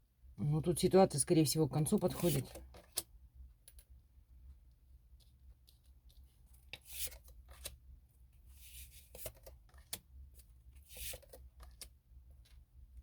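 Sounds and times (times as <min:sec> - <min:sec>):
cards sliding on table: 0:10.9 - 0:11.4.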